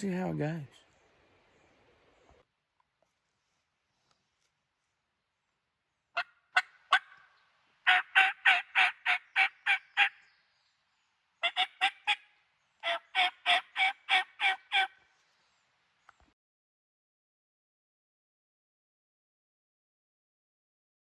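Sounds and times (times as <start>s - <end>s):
turkey call yelps: 6.2s - 10.2s, 11.4s - 12.2s, 12.8s - 15.0s.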